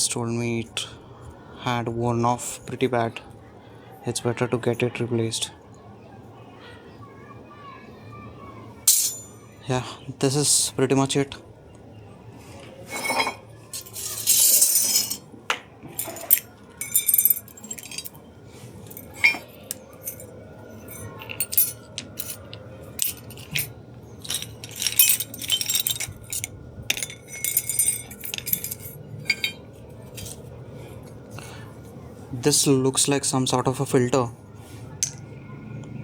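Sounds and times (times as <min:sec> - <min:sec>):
metal parts clinking: 0:08.9 - 0:09.4, 0:12.9 - 0:15.3, 0:15.9 - 0:30.5, 0:35.0 - 0:35.2.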